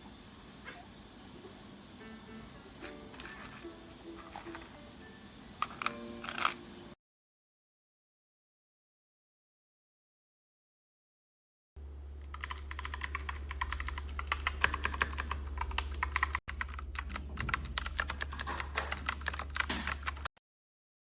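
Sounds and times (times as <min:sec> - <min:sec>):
mechanical keyboard typing: 0:05.6 - 0:06.6, 0:12.2 - 0:20.3
low steady hum: 0:11.8 - 0:18.1.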